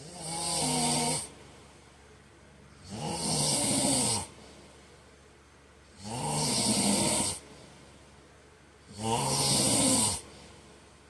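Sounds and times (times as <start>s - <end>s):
man snoring: 0.0s - 1.3s, 2.8s - 4.4s, 5.9s - 7.4s, 8.8s - 10.5s.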